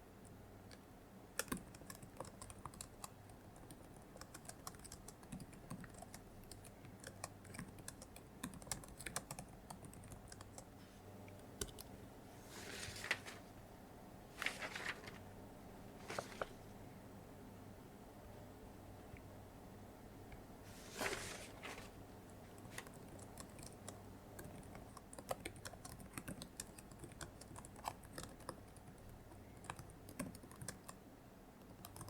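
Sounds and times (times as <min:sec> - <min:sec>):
typing on computer keyboard: 0:01.4 - 0:10.7, 0:22.6 - 0:31.0, 0:31.6 - 0:32.0.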